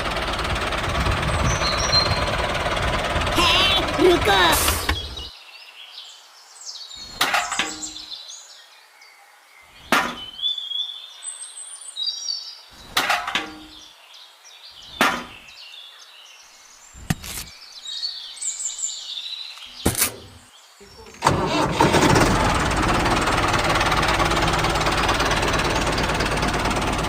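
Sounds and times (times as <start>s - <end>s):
birds chirping: 0.0s - 21.2s
sharp knocks: 9.9s - 10.3s, 15.0s - 15.4s.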